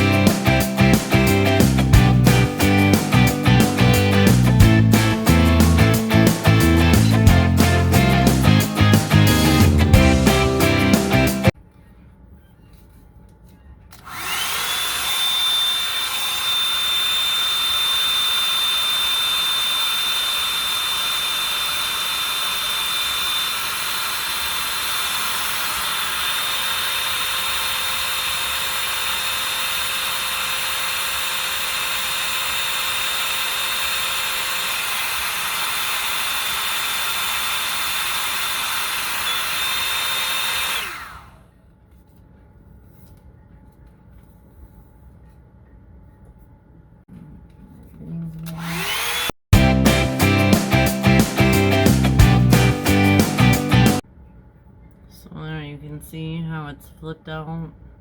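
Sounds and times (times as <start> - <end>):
hair dryer whining: 0.0 - 11.6, 14.0 - 41.5, 48.4 - 54.0.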